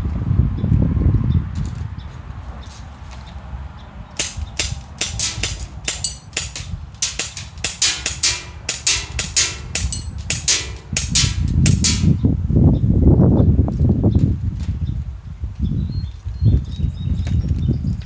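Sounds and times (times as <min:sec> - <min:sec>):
airsoft gun shots: 0:04.2 - 0:12.2.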